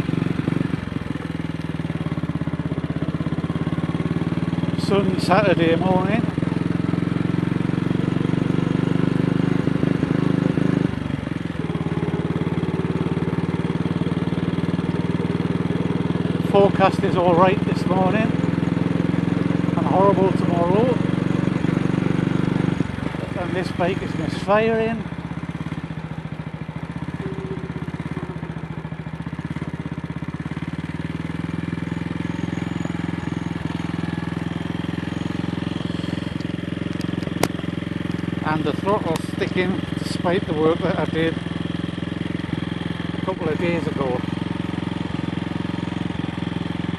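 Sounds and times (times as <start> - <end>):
motorcycle engine misfiring: 11.0 - 46.9.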